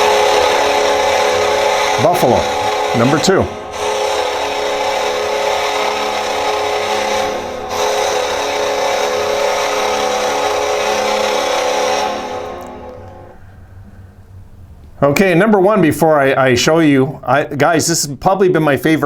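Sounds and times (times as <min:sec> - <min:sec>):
arena goal horn: 0:00.0 - 0:13.6.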